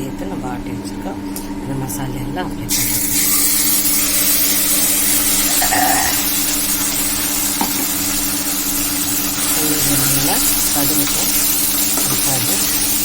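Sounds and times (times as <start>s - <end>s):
paste sizzling in hot oil: 2.7s - 13.0s.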